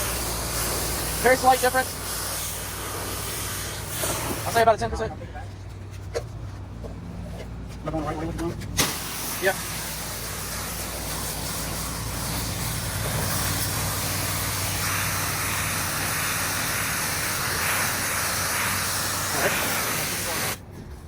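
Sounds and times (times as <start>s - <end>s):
high-pressure water spray hissing: 0.0s - 4.8s, 8.8s - 20.6s
pressure washer engine running: 0.0s - 4.8s, 8.8s - 20.6s.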